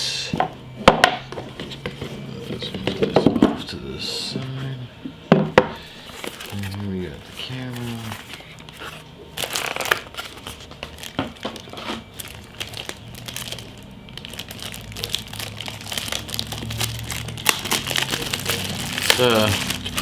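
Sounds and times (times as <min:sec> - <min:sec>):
plastic packaging crinkling: 0:06.0 - 0:20.0.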